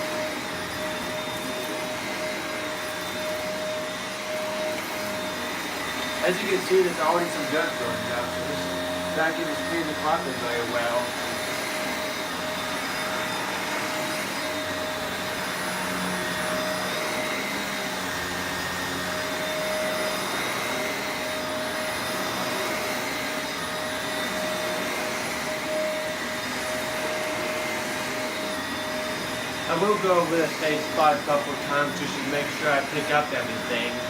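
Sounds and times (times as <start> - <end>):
vacuum cleaner on carpet: 0.0 - 34.0.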